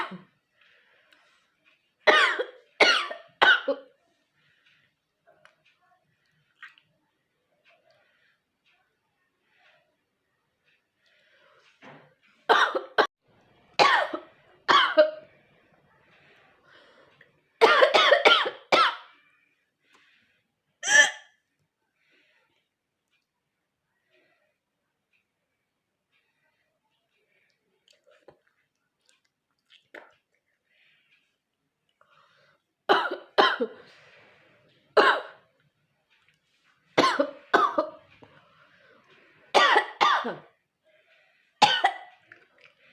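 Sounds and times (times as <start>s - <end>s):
woman coughing: 0.0s - 0.3s, 2.1s - 3.9s, 12.5s - 13.1s, 13.8s - 15.2s, 17.6s - 19.1s, 20.8s - 21.3s, 32.9s - 33.8s, 37.0s - 38.0s, 39.6s - 40.5s, 41.6s - 42.1s.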